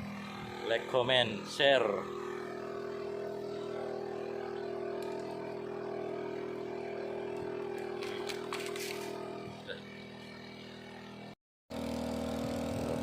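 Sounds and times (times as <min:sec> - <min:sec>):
small engine running steadily: 0:00.0 - 0:13.0.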